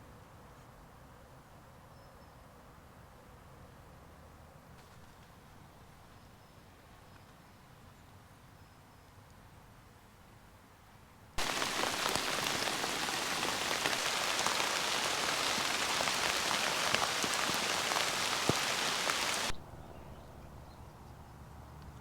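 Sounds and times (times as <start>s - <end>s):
rain falling: 11.4s - 19.6s.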